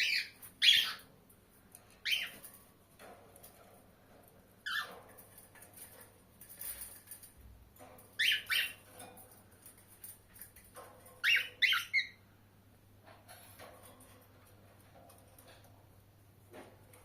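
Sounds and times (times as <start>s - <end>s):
cockatiel calling: 0.0s - 1.0s, 11.2s - 12.2s.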